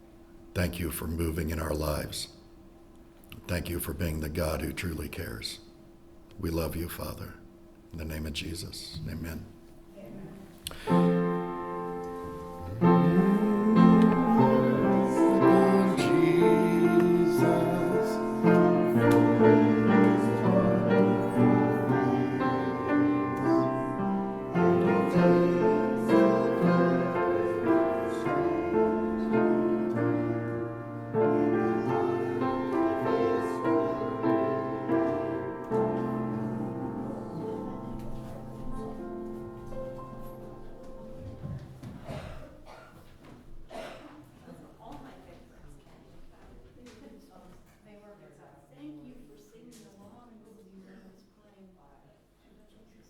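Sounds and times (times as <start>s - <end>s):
slow gentle piano music: 10.8s - 41.8s.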